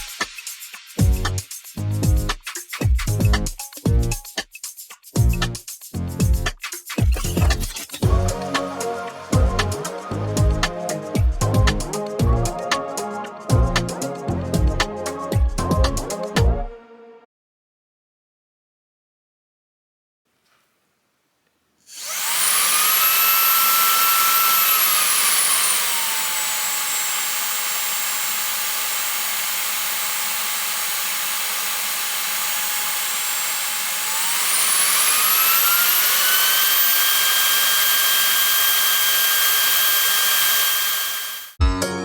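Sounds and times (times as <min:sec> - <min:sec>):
vacuum cleaner motor whining: 0:21.9 - 0:41.6.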